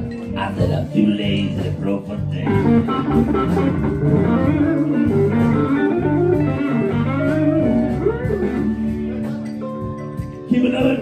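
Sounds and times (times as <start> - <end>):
blues band playing: 0.0 - 11.0
lead guitar fills: 2.4 - 9.4
person singing: 10.4 - 11.0.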